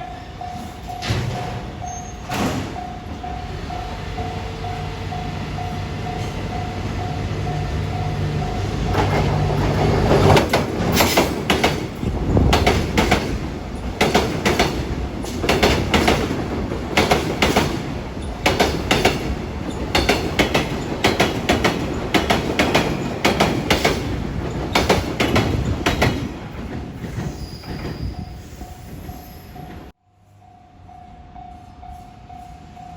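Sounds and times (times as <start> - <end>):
wagon wheels clattering over rail joints: 7.8 - 28.1.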